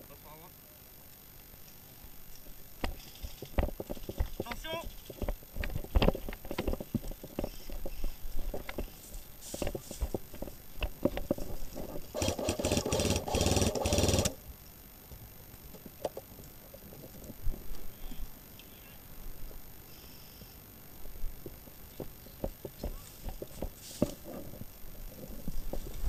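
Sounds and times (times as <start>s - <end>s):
footsteps: 2.4s - 12.1s, 21.4s - 26.0s
gearbox motor hum: 10.1s - 14.4s
airsoft gun full-auto burst: 12.2s - 14.4s.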